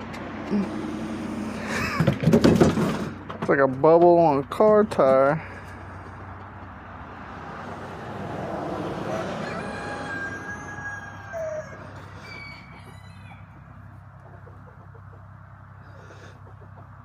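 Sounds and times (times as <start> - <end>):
rooster crowing: 8.6 - 13.8.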